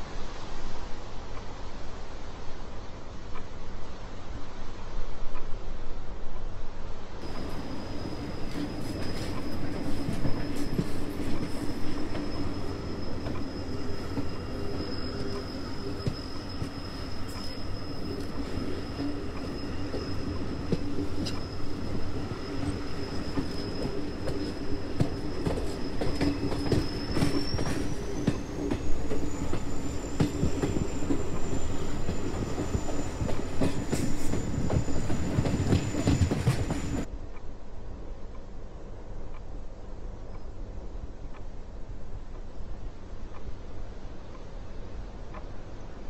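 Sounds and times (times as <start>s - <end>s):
train rumble: 0.0s - 46.0s
high whine: 7.2s - 37.1s
rail clicks: 7.2s - 37.1s.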